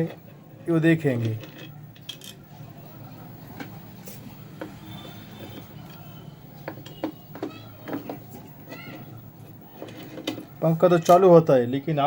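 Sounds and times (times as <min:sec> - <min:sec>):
clicks and knocks handling fan: 0:06.6 - 0:09.0.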